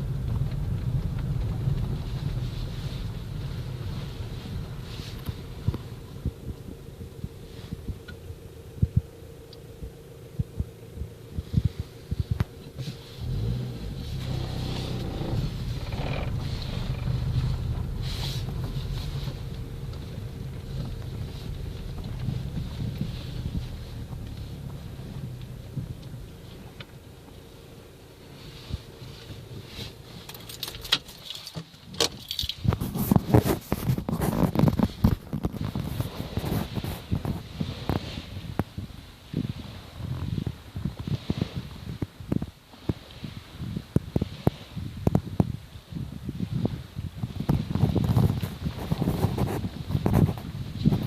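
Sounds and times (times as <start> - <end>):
wind buffeting microphone: 0.0 - 30.3, 32.6 - 51.0
motor rumbling: 0.0 - 31.1.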